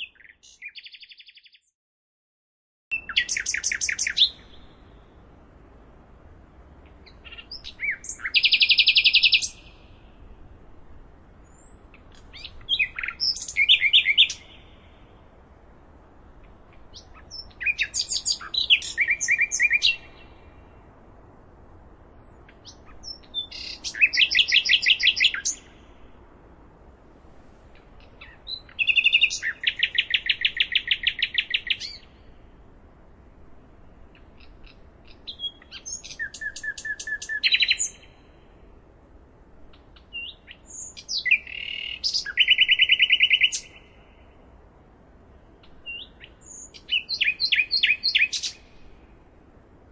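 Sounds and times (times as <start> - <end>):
songbird singing with trills: 0.0 - 1.7, 2.9 - 5.0, 6.9 - 10.1, 11.4 - 15.1, 16.4 - 20.5, 22.1 - 26.0, 28.0 - 32.3, 34.1 - 38.4, 39.7 - 44.3, 45.6 - 48.9.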